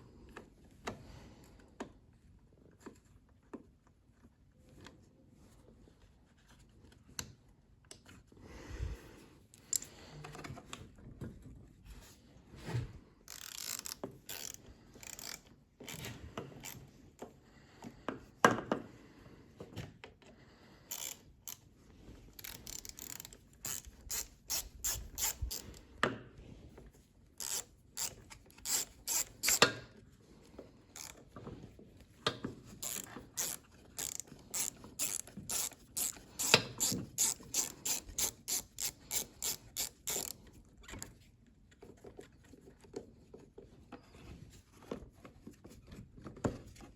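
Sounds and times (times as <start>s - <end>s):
ratchet wrench clicking: 13.3s - 16.8s, 20.9s - 21.6s, 22.3s - 25.8s, 27.4s - 29.7s, 31.0s - 31.2s, 32.8s - 40.4s.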